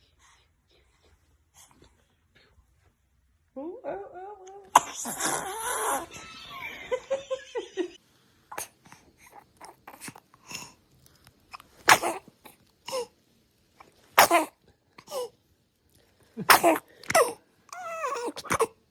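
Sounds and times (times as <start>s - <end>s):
baby sneezing: 4.7s - 6.0s, 11.8s - 12.3s, 14.2s - 15.3s, 16.5s - 18.8s.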